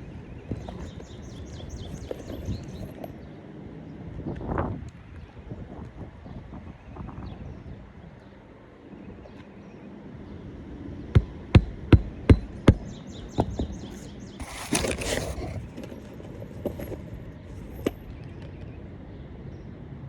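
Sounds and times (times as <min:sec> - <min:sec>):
noisy scraping: 0:00.5 - 0:03.1, 0:13.7 - 0:18.1
hammer hitting nail: 0:11.2 - 0:12.9.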